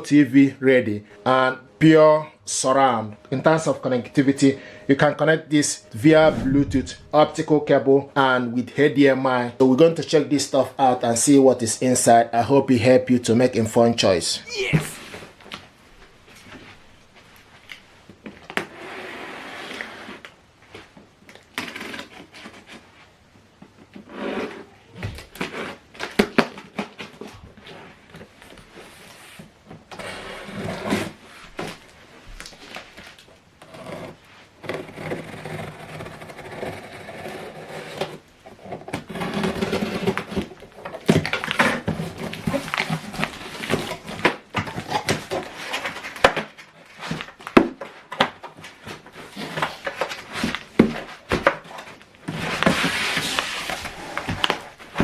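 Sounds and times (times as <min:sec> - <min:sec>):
cardboard box rustling and scraping: 0:38.6 - 0:46.2.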